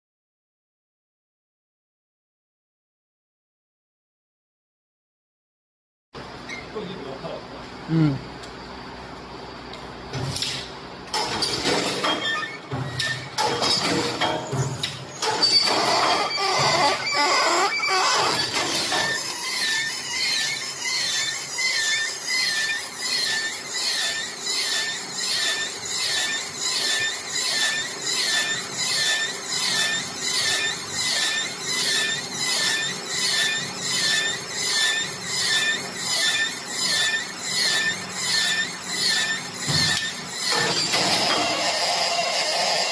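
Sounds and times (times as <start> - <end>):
weaving machine squeal and clatter: 10.3 - 42.9.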